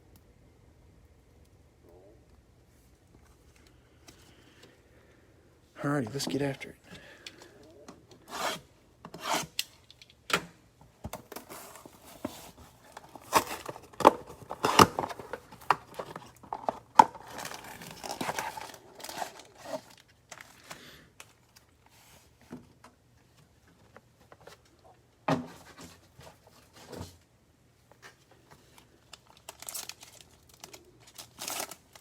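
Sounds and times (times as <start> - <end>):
packaging being torn and crinkled: 12.9 - 21.8, 28.7 - 32.0.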